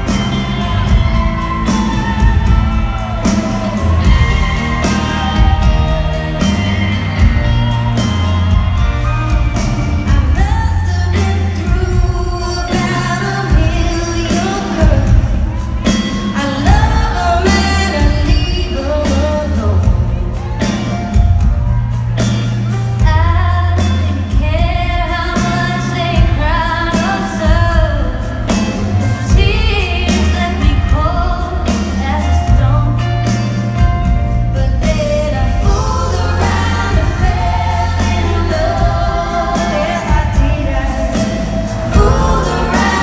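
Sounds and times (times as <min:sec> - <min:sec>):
live band playing: 0:00.0 - 0:43.0
women singing: 0:09.5 - 0:20.6, 0:23.0 - 0:33.4, 0:34.6 - 0:43.0.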